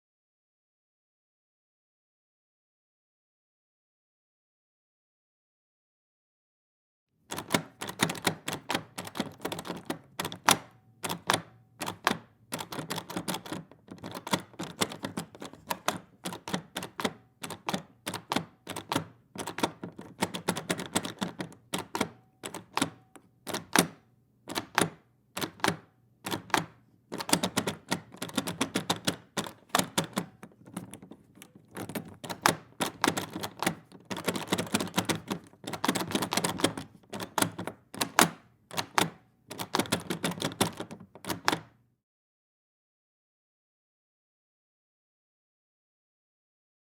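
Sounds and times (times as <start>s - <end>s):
door handle latch clicking: 7.3s - 41.7s.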